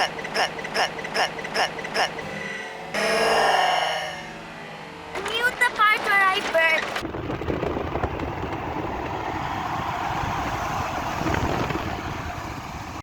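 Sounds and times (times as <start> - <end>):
car engine and road noise: 4.6 - 13.0.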